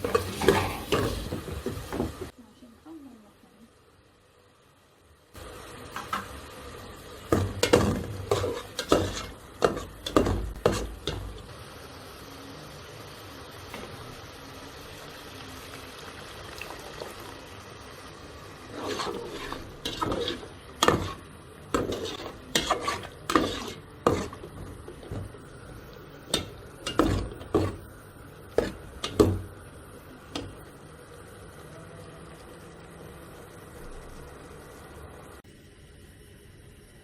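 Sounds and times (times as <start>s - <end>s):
metal spoon scraping pot: 7.6s - 11.3s, 18.7s - 25.2s.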